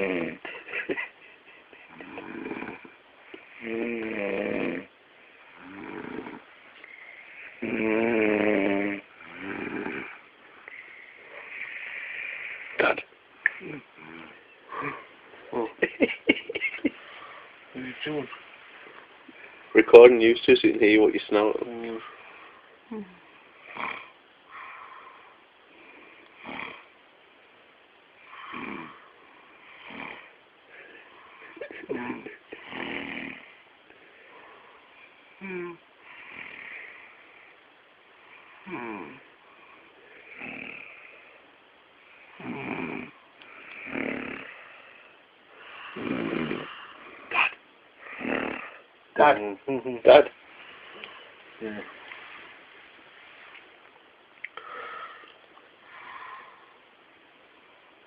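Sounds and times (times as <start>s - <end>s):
person snoring: 0.0s - 0.5s, 1.9s - 4.9s, 5.5s - 15.8s, 22.9s - 26.9s, 28.2s - 33.6s, 35.4s - 37.2s, 38.5s - 39.3s, 40.1s - 41.4s, 42.3s - 48.9s
breathy hissing exhales: 5.5s - 15.6s, 23.6s - 26.9s, 28.2s - 37.6s, 38.2s - 41.5s, 42.1s - 49.0s, 54.5s - 56.9s
soft breath: 54.6s - 56.9s.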